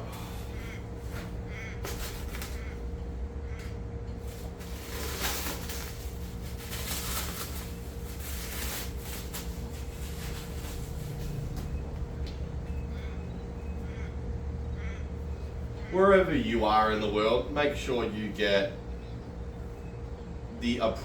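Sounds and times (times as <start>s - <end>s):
steady low hum: 0.0s - 21.0s
packaging rustling: 1.8s - 2.8s, 4.2s - 11.9s.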